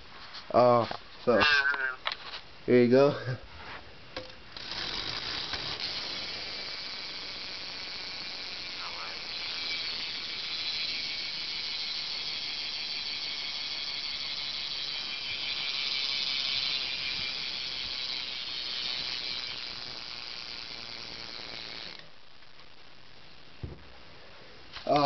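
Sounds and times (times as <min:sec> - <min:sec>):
bike hub ratcheting buzz: 0:04.2 - 0:23.5.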